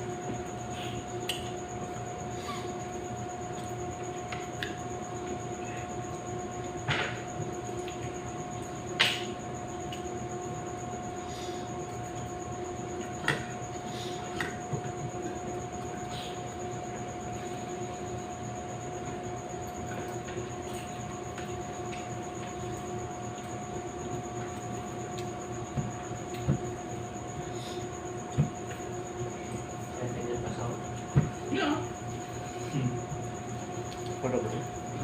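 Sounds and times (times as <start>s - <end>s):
steady hum: 0.0s - 35.0s
person eating with clicks: 9.8s - 10.1s, 33.9s - 34.2s.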